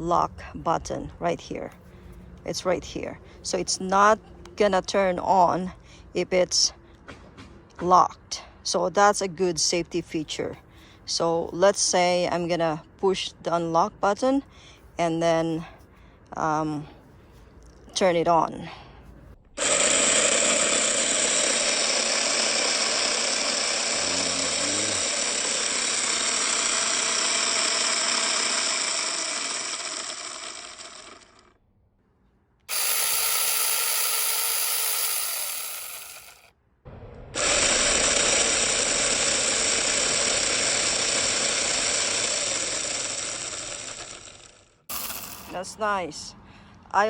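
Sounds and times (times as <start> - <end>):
mini chainsaw running: 19.6 - 31.6, 32.7 - 36.5, 37.4 - 45.6.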